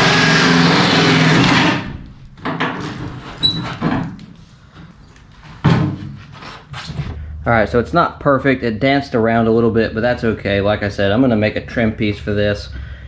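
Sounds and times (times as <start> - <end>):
drill with hole saw cutting metal: 0.0 - 2.0
knocks and clunks: 1.3 - 4.9, 5.6 - 6.2.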